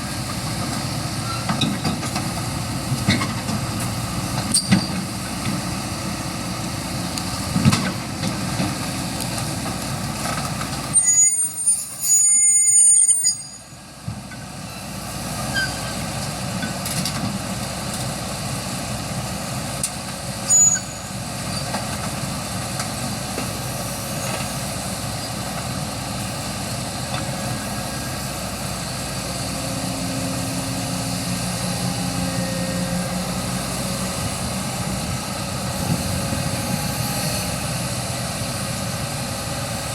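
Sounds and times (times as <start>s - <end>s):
diesel engine running: 0.0s - 11.0s, 13.7s - 39.9s
high-pitched squeal: 11.0s - 13.8s.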